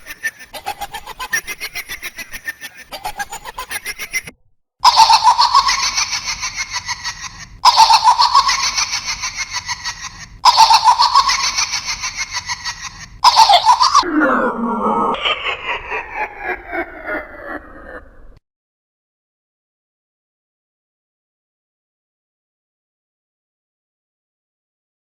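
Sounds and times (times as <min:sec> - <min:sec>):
electronic cackling laugh: 0:00.0 - 0:18.4.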